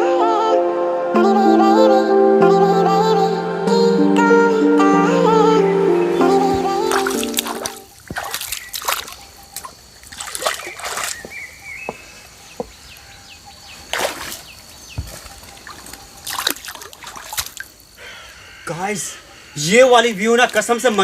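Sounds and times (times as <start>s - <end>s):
running water: 6.2s - 11.6s, 13.8s - 17.9s, 19.7s - 21.0s
feet splashing in stream: 6.6s - 12.1s, 13.8s - 17.8s.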